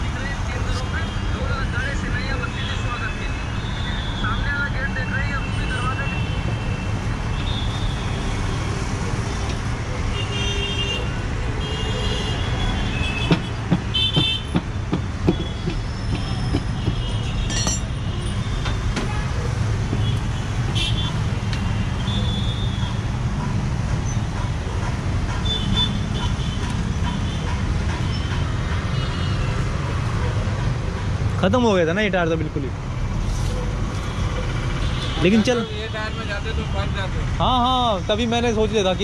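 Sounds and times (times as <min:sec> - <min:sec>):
street traffic rumble: 0:00.0 - 0:39.0
sharp knocks and clicks: 0:13.2 - 0:17.9
vehicle horns tooting: 0:34.8 - 0:36.8.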